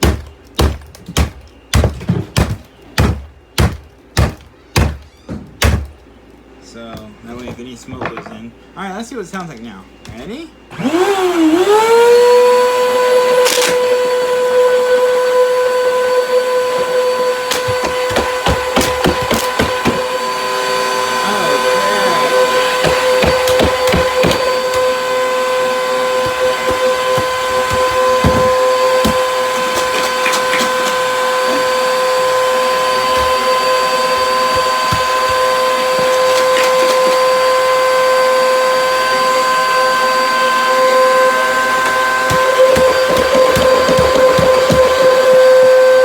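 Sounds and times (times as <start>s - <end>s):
vacuum cleaner running: 10.7s - 46.0s
screws and bolts rattling inside: 42.3s - 45.4s.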